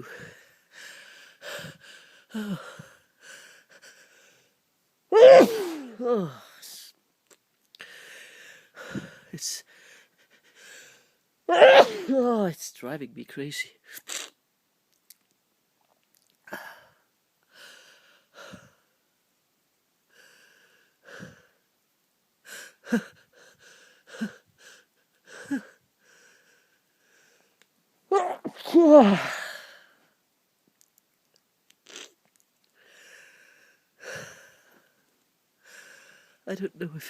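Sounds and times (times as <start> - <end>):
soft catching breaths: 0.0 - 4.6, 7.8 - 11.2, 22.4 - 27.7, 32.7 - 36.4
person sneezing loudly: 5.1 - 6.4, 11.5 - 12.3, 28.1 - 29.7.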